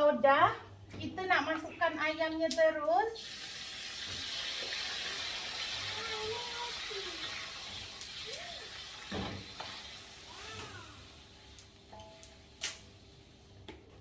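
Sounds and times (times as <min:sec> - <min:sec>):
garlic sizzling in hot oil: 0:03.2 - 0:13.4.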